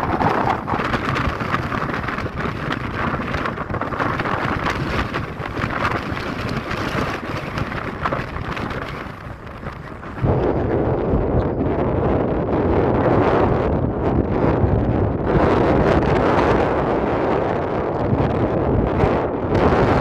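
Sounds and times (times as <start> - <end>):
low rumble: 0.0 - 11.7
wind gusts buffeting microphone: 0.0 - 20.0.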